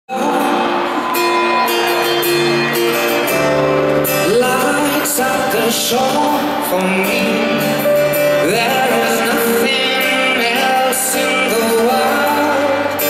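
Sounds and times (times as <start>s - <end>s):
man singing: 0.1s - 1.1s, 4.0s - 13.0s
live band playing pop-rock: 0.1s - 13.0s.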